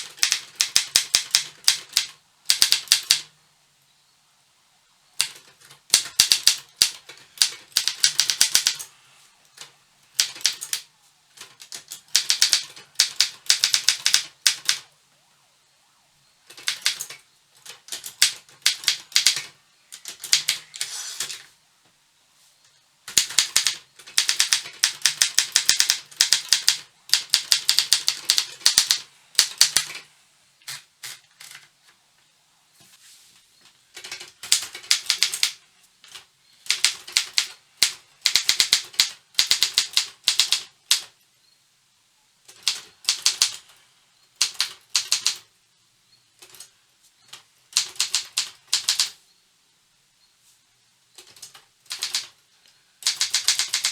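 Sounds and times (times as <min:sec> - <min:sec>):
typewriter key strikes: 0:51.2 - 0:52.3, 0:53.0 - 0:53.9.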